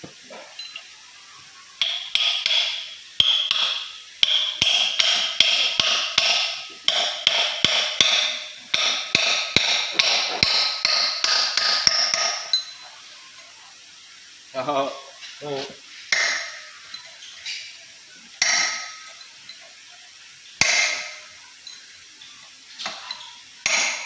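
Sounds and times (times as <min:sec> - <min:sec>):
hammer striking metal: 0:01.8 - 0:12.8, 0:16.1 - 0:17.6, 0:18.4 - 0:19.2, 0:20.6 - 0:21.4, 0:22.8 - 0:24.0.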